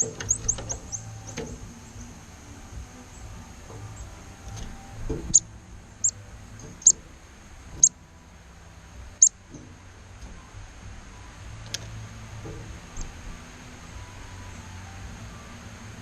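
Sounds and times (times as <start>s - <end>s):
bird chirping: 0.0s - 2.2s, 3.0s - 7.0s, 7.8s - 8.0s, 9.1s - 9.4s.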